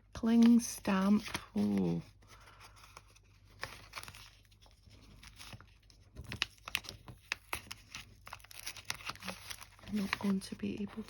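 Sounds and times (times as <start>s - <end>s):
packaging crinkling and clicking: 5.2s - 10.8s.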